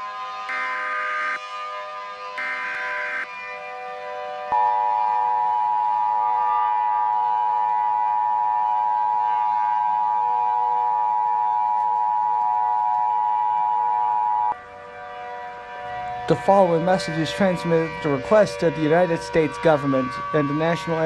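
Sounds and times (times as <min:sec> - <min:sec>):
two-tone alert signal: 0:00.5 - 0:01.4, 0:02.4 - 0:03.3.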